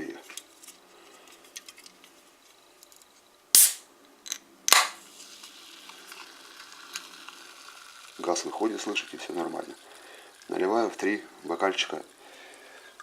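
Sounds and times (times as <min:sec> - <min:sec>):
can opening pops: 0:03.6 - 0:07.4
carbonation gas hissing: 0:05.0 - 0:13.0.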